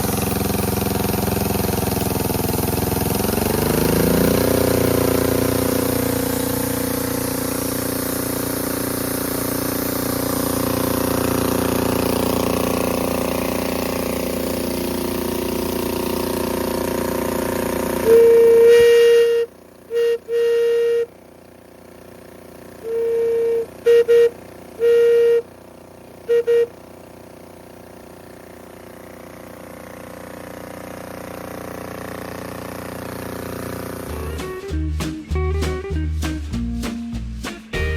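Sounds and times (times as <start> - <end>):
air-cooled engines running: 0.0 - 37.9
steam whistle blasts and toots: 18.0 - 21.2, 22.8 - 25.5, 26.2 - 26.8.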